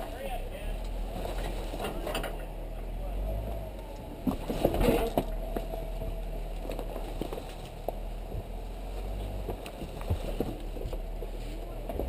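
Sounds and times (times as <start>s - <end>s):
vehicle engine crawling: 0.0s - 12.0s
tyres knocking over rocks: 4.1s - 12.0s.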